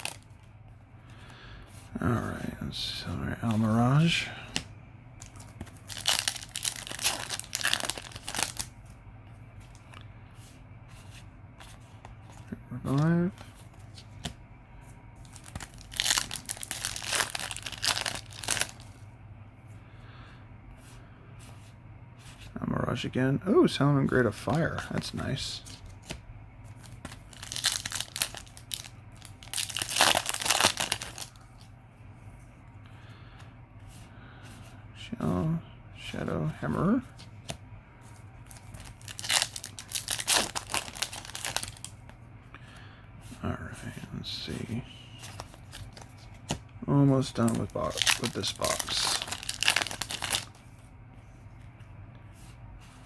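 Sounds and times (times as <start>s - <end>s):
foil pack tearing and crinkling: 5.8s - 8.7s, 15.3s - 18.8s, 27.2s - 31.4s, 38.5s - 41.9s, 47.3s - 50.6s.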